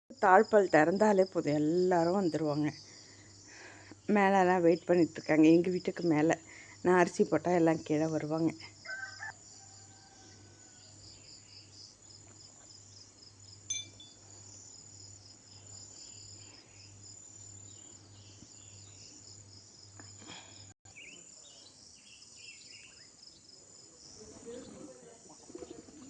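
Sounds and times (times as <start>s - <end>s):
crickets chirping: 6.0s - 25.0s.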